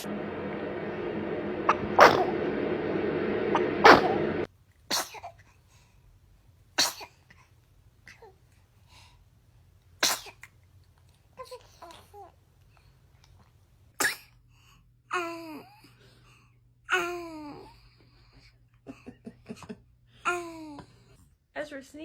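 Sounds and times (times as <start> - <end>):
baby sneezing: 4.9 - 5.3, 6.8 - 7.2, 10.0 - 10.5, 14.0 - 14.3.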